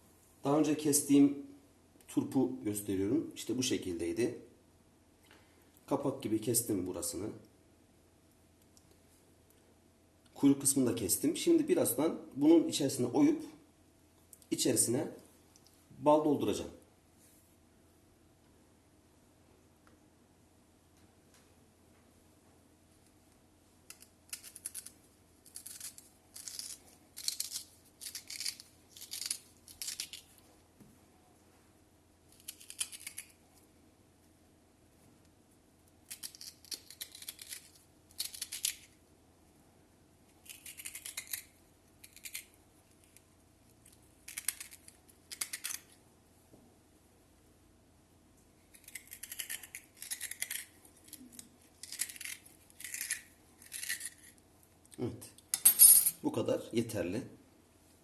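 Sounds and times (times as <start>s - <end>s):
spoon scraping radish: 48.7s - 54.4s.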